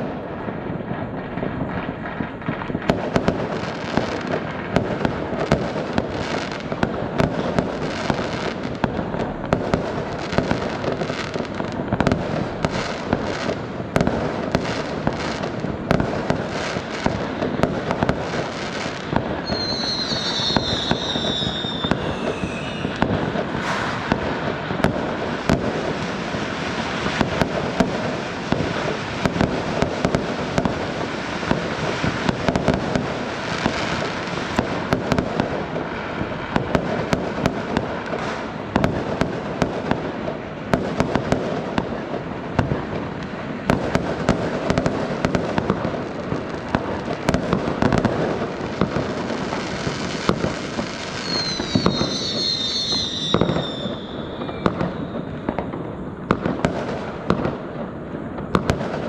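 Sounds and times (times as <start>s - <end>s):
fireworks bangs and pops: 0.0s - 59.0s
firework whistles falling in pitch: 19.4s - 24.9s, 50.9s - 55.7s.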